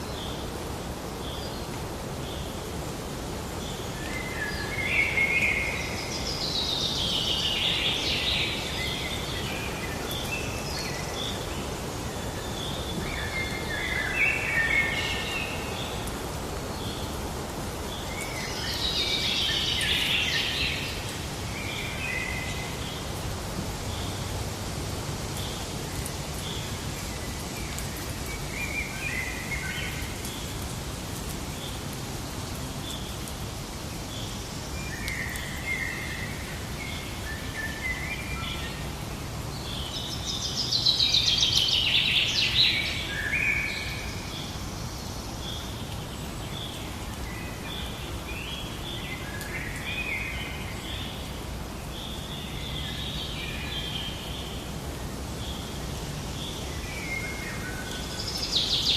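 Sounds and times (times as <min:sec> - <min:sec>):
outdoor ambience hiss: 0:00.0 - 0:58.9.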